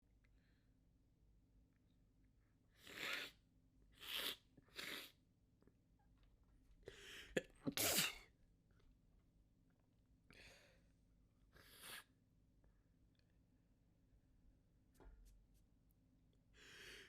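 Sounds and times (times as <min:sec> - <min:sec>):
person sneezing: 0:07.4 - 0:08.3.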